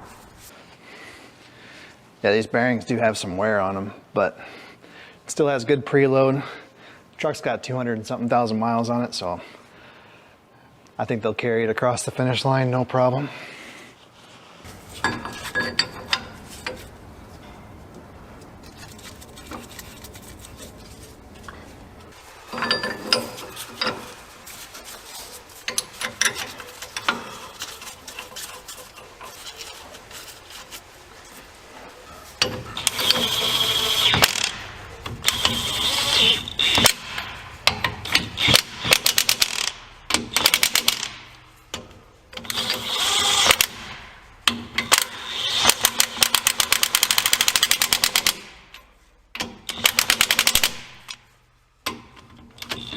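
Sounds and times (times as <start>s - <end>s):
metal clinks: 22.5s - 24.2s
pneumatic impact wrench hammering: 32.4s - 48.7s, 49.3s - 51.2s.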